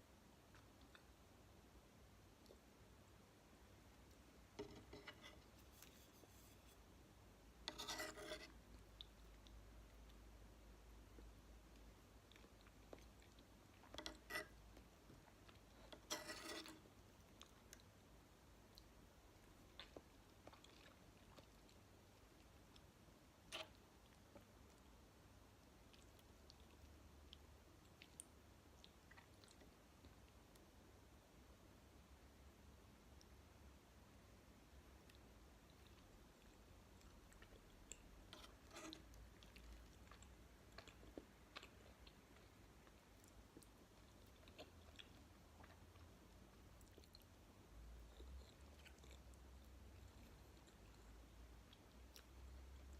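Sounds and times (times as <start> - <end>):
chewing soft candy: 8.6 - 31.1, 34.6 - 52.9.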